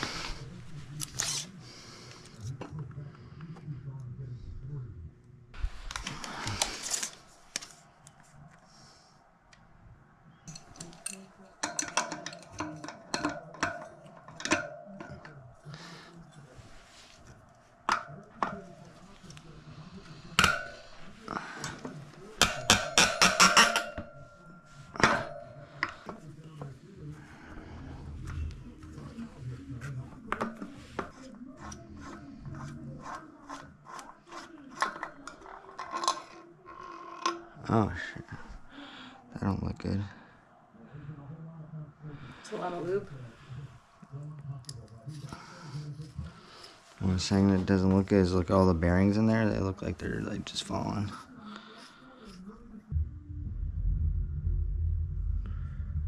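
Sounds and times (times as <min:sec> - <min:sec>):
metal parts scraping and rasping: 0:00.0 - 0:01.6
metal bike parts clinking: 0:10.5 - 0:15.8, 0:16.6 - 0:26.7.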